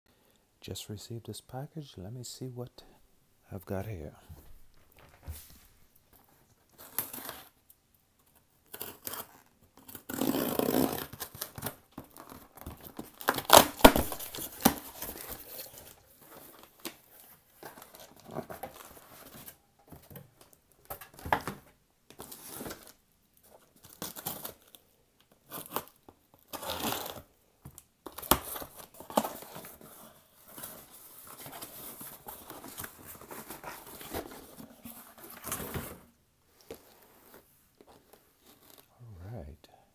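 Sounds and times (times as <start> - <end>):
package wrapping tearing: 8.6 - 17.0, 25.4 - 27.3.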